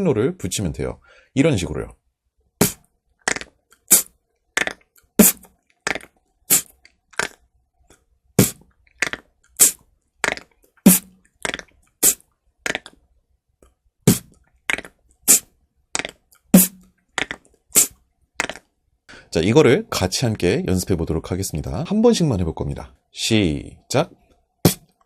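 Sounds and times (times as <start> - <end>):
beatbox pattern: 2.6 - 7.4, 8.4 - 13.0, 14.1 - 18.7, 24.6 - 25.0.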